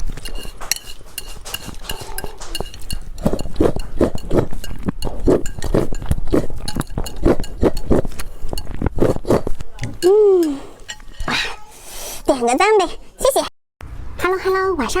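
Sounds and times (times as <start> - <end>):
utensils clinking on bowl: 0.0 - 11.7
wet chewing of food: 0.0 - 12.0.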